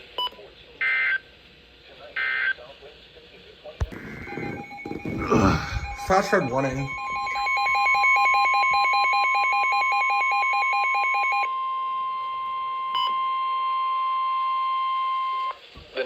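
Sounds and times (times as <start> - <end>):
rapid electronic beeping: 3.8 - 8.0
steady alarm tone: 3.8 - 10.7.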